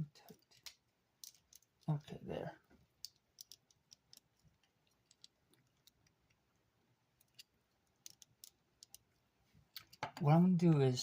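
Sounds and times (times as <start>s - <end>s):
plastic parts clicking and tapping: 0.2s - 2.0s, 3.0s - 6.4s, 7.2s - 10.3s.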